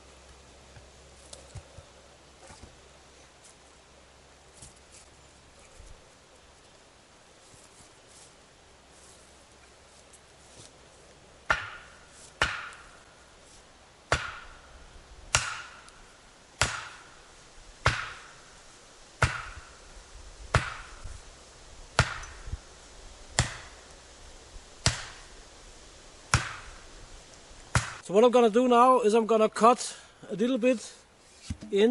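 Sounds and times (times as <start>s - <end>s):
axe striking wood: 11.5s - 12.9s, 14.1s - 14.6s, 15.3s - 15.9s, 16.6s - 17.1s, 17.8s - 18.3s, 19.2s - 19.7s, 20.5s - 21.0s, 22.0s - 22.4s, 23.4s - 23.7s, 24.8s - 25.2s, 26.3s - 26.7s, 27.7s - 28.0s.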